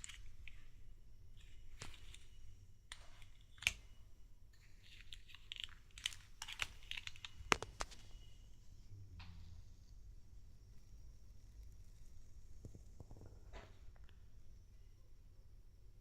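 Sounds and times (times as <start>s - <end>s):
plastic toy parts clicking: 0.0s - 0.8s, 1.4s - 3.9s, 4.8s - 8.0s
packaging crinkling: 0.0s - 4.0s, 4.6s - 8.3s.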